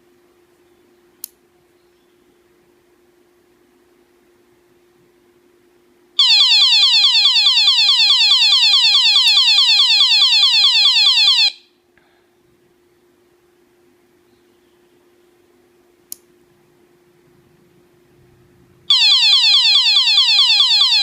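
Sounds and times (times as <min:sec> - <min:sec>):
electronic alarm falling chirps: 0:06.2 - 0:11.6, 0:18.9 - 0:21.0.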